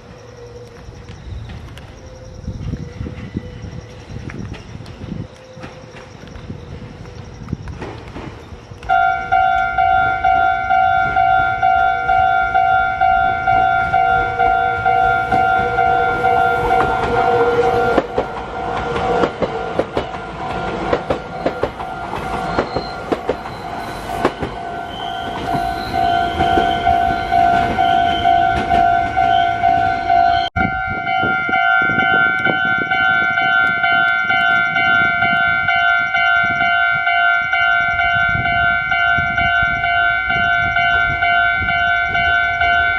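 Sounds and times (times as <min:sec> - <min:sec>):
crossing bell ringing: 0:08.8 - 0:42.9
train wheels clattering: 0:13.2 - 0:30.5.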